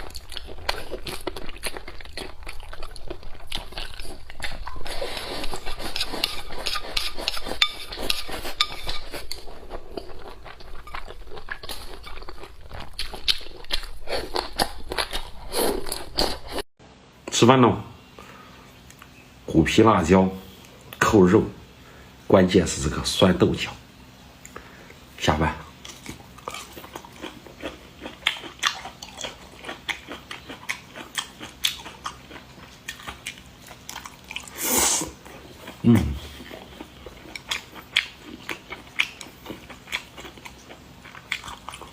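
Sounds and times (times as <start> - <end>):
crunching and chewing: 0.0 - 16.6, 25.8 - 41.9.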